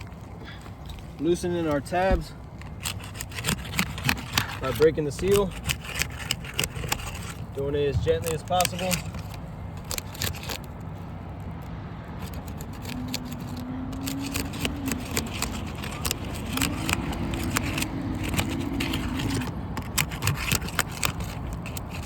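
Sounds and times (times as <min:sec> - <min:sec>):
shingle seals cracking loose: 0:02.4 - 0:22.0.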